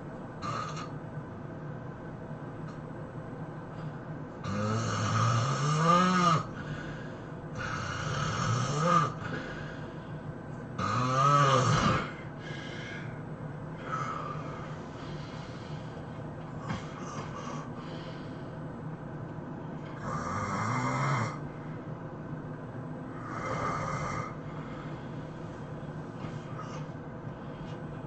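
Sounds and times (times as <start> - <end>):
person snoring heavily: 0.4 - 0.9, 4.4 - 9.9, 10.8 - 13.2, 13.8 - 15.9, 19.9 - 21.5, 23.1 - 25.2
quiet breaths: 2.6 - 11.0, 11.6 - 28.0.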